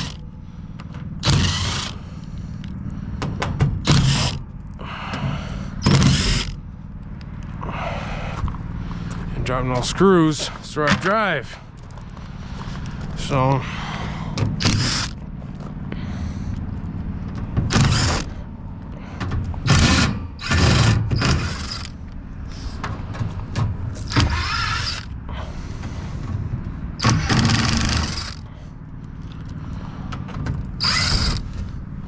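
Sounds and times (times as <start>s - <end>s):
cordless driver removing screws: 0.0s - 0.2s, 1.2s - 2.8s, 3.5s - 4.5s, 5.1s - 6.6s, 14.4s - 15.2s, 17.6s - 18.4s, 19.2s - 22.0s, 23.9s - 25.2s, 27.0s - 28.5s, 30.3s - 31.7s
steady low hum: 0.0s - 32.0s.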